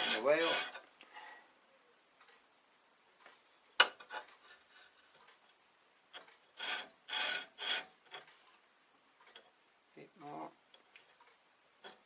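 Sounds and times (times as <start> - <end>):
steel tool scraping grinding wheel: 0.0 - 0.9, 6.2 - 8.3.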